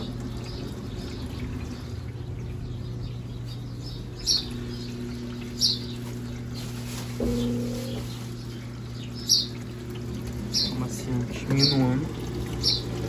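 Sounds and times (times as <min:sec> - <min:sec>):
bird chirping: 0:00.0 - 0:09.6
washing machine motor humming: 0:00.0 - 0:13.0
water draining: 0:07.2 - 0:13.0.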